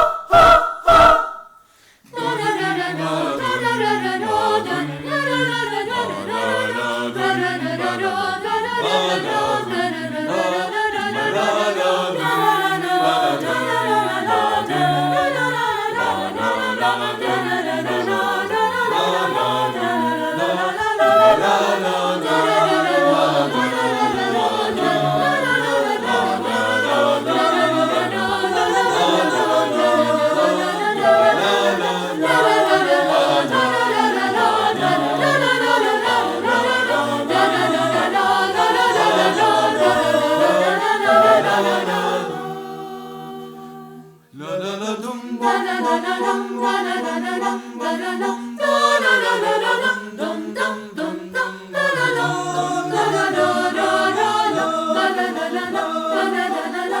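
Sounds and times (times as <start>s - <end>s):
choir singing unaccompanied: 0.0s - 1.5s, 2.1s - 57.0s.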